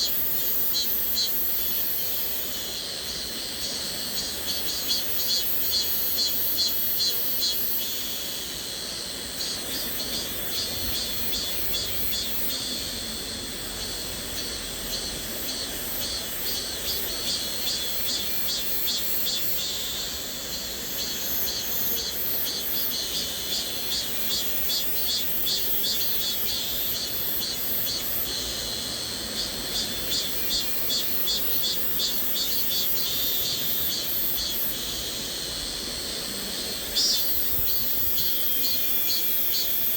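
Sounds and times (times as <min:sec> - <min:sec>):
cicadas buzzing: 0:00.0 - 0:39.9.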